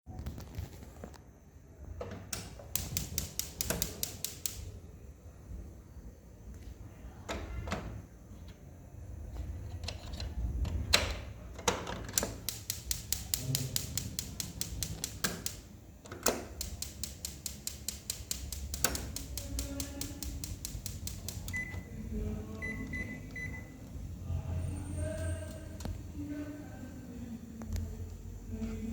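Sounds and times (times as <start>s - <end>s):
stove knobs clicking: 2.1s - 4.7s, 10.7s - 21.6s
igniter ticking rapidly: 2.3s - 4.8s, 12.2s - 21.7s
short beeps: 21.5s - 22.0s, 22.6s - 23.8s.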